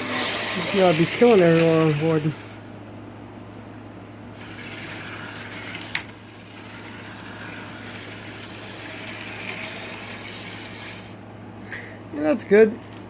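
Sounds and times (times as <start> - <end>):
model trolley electric whir: 0.0 - 2.8, 4.3 - 11.2.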